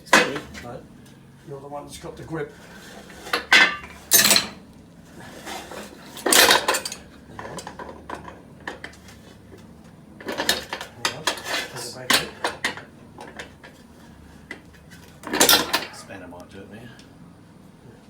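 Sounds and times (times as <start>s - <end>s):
metal tools clanking and scraping: 0.0s - 16.4s.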